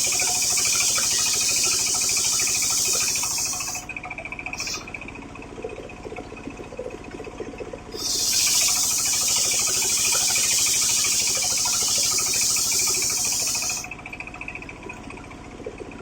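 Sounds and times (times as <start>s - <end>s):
circular saw cutting wood: 0.0s - 3.8s, 4.6s - 4.9s, 8.0s - 13.9s
engine running: 0.0s - 16.0s.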